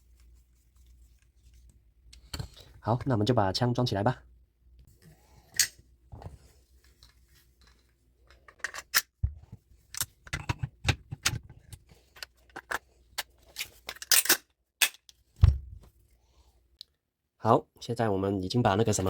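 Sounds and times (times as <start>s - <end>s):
metal parts clicking and clacking: 7.0s - 9.1s, 9.9s - 15.2s.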